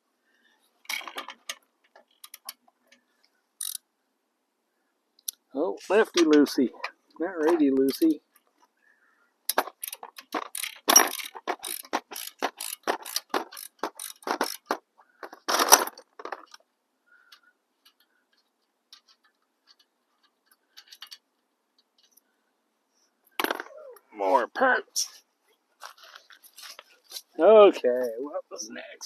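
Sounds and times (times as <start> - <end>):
ratchet wrench clicking: 3.6 - 3.8, 9.5 - 14.8
ratchet rasp: 9.6 - 14.8.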